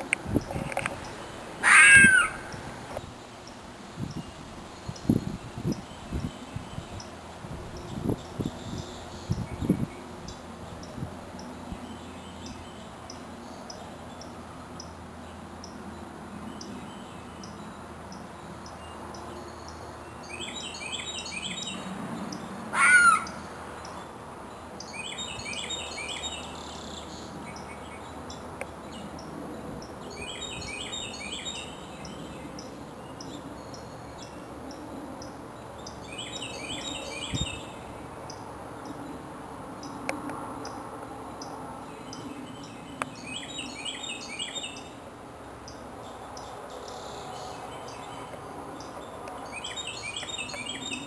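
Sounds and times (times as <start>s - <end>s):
harsh bird call: 1.6s - 2.6s, 22.7s - 23.4s
bird chirping: 41.4s - 45.0s, 45.7s - 51.0s.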